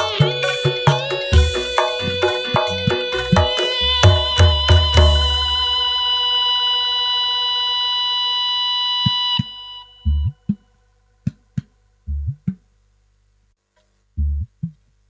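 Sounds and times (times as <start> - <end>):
hand drum strokes: 0.0 - 6.0.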